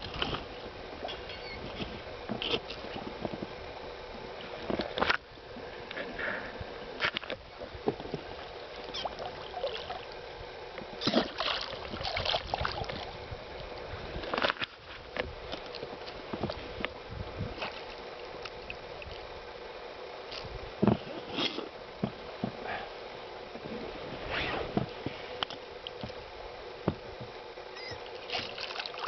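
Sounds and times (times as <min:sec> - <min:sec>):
knocks and clatter in a boat: 0:20.8 - 0:21.2, 0:22.0 - 0:22.7, 0:26.8 - 0:27.4.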